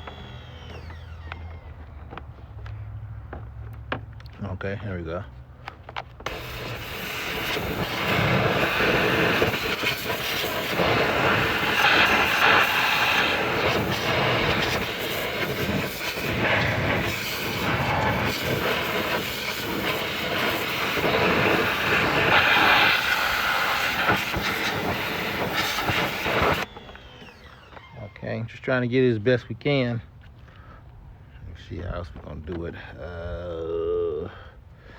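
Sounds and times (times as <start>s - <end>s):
pressure washer spraying: 6.3s - 27.6s.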